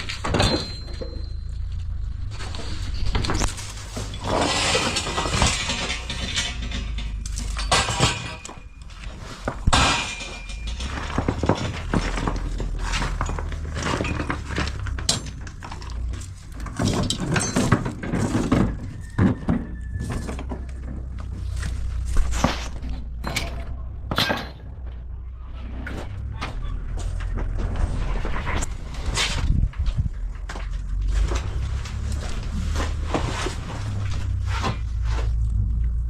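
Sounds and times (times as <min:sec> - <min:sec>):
sharp knocks and clattering: 0:00.0 - 0:36.0
steady low hum: 0:20.9 - 0:36.0.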